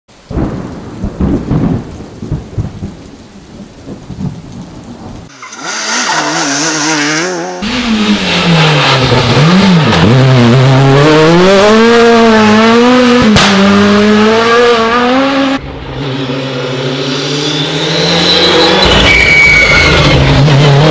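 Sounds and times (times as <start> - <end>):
rally car engines revving: 5.3 - 20.9.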